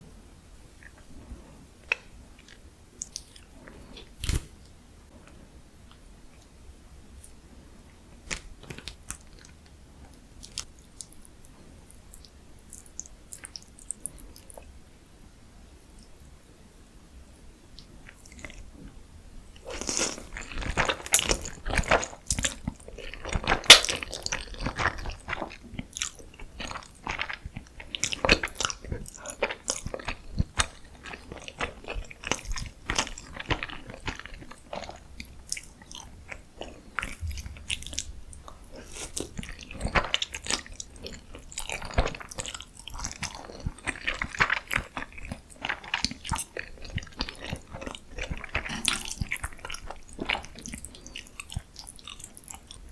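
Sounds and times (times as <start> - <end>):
person chewing crunchy food: 19.6 - 52.9.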